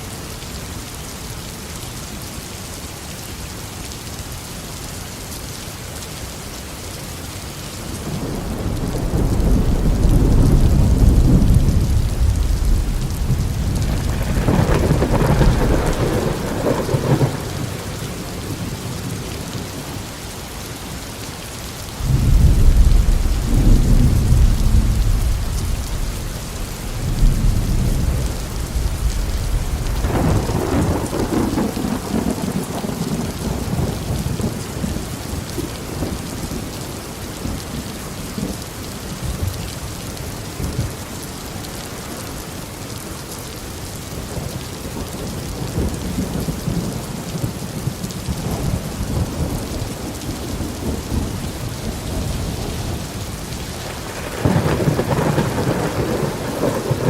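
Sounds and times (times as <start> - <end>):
heavy rain falling: 0.0 - 57.0
rolling thunder: 8.2 - 19.1, 22.0 - 34.6, 45.6 - 57.0.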